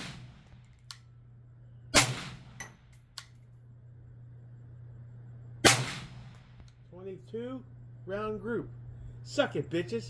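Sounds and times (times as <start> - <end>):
suppressed rifle shot: 2.0 - 2.8, 5.6 - 6.5
light metallic clinks: 2.6 - 3.6.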